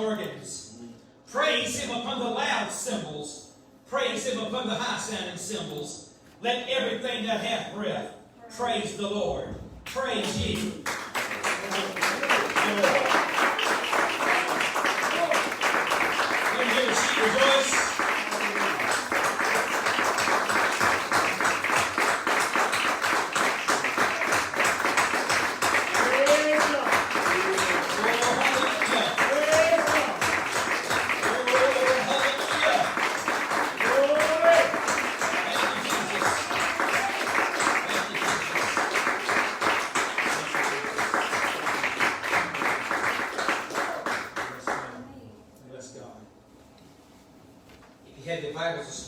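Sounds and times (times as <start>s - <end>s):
congregation clapping: 9.9s - 45.0s.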